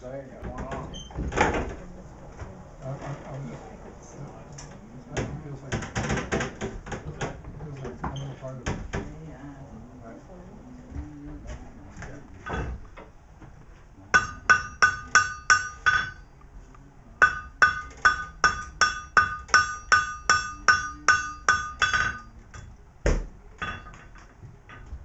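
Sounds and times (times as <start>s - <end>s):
hammer striking metal on anvil: 14.2s - 16.3s, 17.2s - 22.7s, 23.6s - 24.1s
dull heavy thump: 23.0s - 23.4s.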